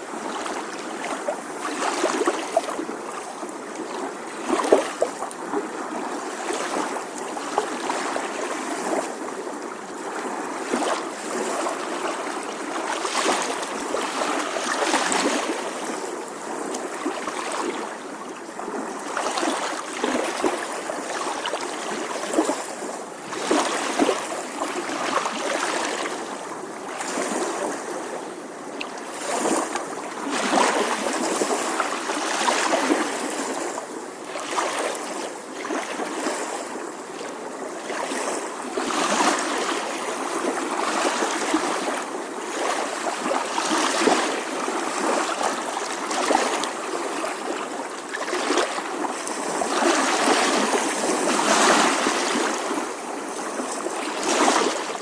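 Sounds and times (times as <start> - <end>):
small waves lapping on shore: 0.0 - 55.0.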